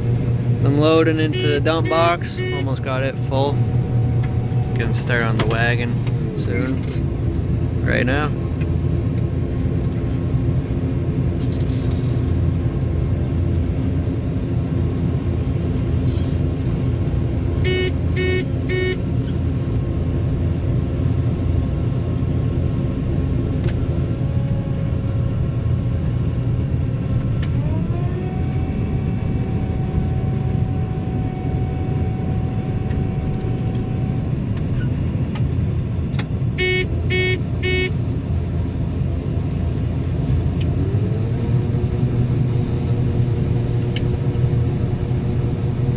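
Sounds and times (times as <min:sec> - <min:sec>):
faint whine rising in pitch: 0:00.0 - 0:11.3, 0:26.7 - 0:35.1
farm machinery engines running: 0:00.0 - 0:45.9.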